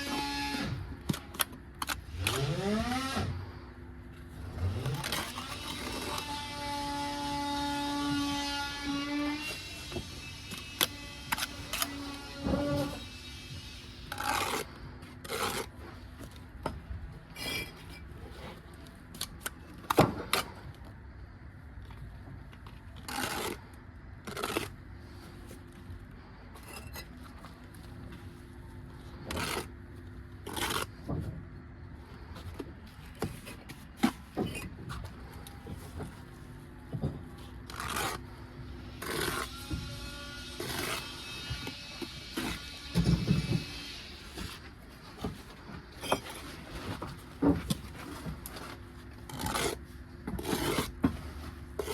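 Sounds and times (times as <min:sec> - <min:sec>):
steady background hum: 0:00.0 - 0:51.9
trowel scraping mortar: 0:13.8 - 0:16.0, 0:30.4 - 0:31.0, 0:37.7 - 0:44.6, 0:46.0 - 0:51.9.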